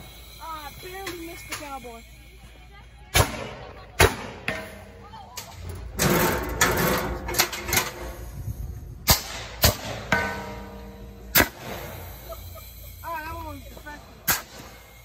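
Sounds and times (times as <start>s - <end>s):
apple cannons firing bangs: 3.1s - 4.9s, 9.0s - 12.1s, 14.2s - 14.9s.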